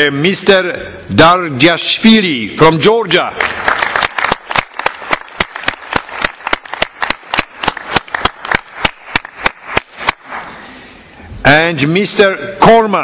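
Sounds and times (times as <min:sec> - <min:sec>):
small group clapping: 0:03.4 - 0:10.4.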